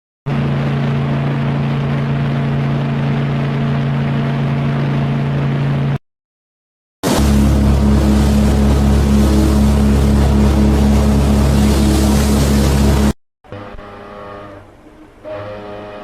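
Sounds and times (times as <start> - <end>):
ship's horn blast: 7.0 - 16.0.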